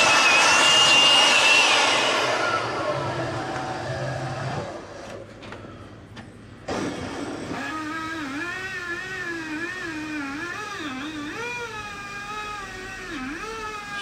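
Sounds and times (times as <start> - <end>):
power tool motor whining: 0.0 - 3.2, 7.5 - 14.0.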